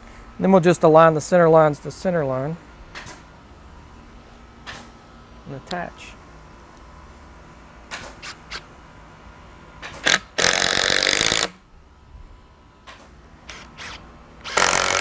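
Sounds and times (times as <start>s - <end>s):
power drill driving screw: 8.0s - 8.7s, 9.8s - 11.6s, 13.5s - 15.0s.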